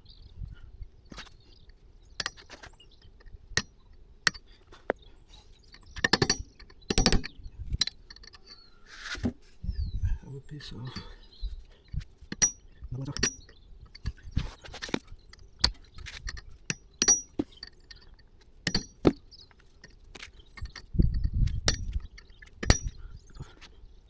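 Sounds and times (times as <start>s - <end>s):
hand tools clinking on metal: 12.3s - 14.1s, 16.2s - 19.0s.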